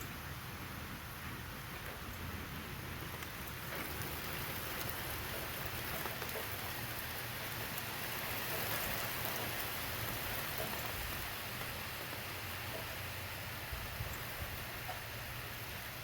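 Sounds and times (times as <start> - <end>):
patter of raindrops: 0.0 - 16.0
rain hissing: 0.0 - 16.0.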